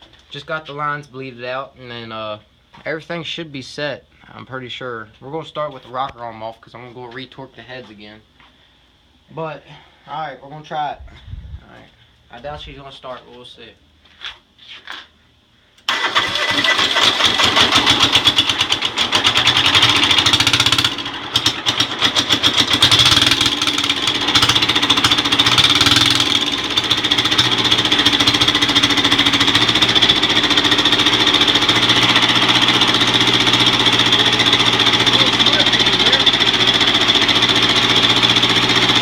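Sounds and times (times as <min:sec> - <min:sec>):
diesel engine cranking and running: 0:15.9 - 0:39.0.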